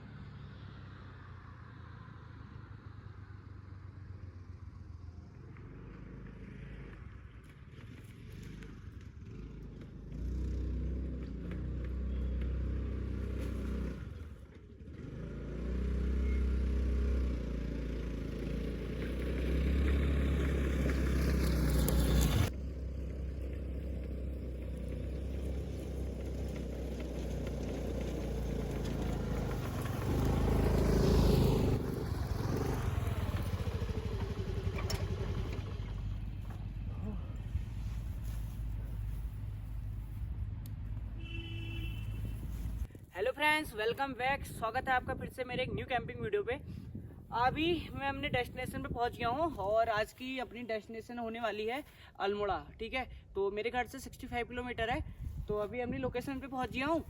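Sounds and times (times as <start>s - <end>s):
vehicle engine running: 4.2s - 42.9s.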